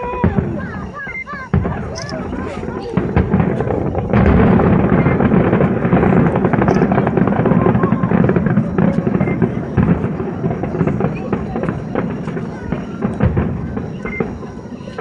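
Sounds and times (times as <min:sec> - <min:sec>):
fireworks booming and crackling: 0:00.0 - 0:15.0.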